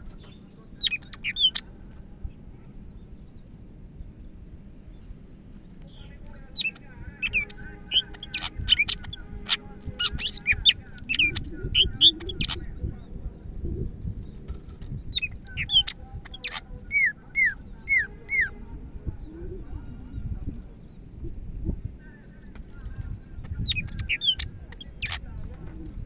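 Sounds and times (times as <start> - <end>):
bird singing chirps and whistles: 0.8 - 1.6, 6.6 - 12.8, 15.1 - 18.6, 22.5 - 25.3.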